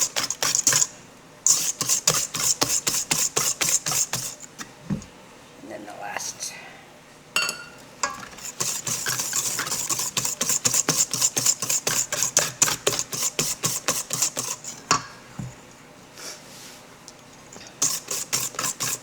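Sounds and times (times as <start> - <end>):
whisk clicking in a bowl: 0.0 - 4.5, 8.0 - 15.2, 17.7 - 19.0.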